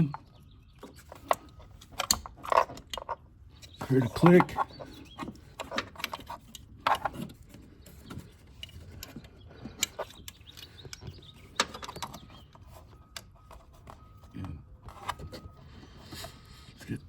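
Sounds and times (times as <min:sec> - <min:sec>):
plastic fittings clicking and rattling: 0:00.0 - 0:12.5.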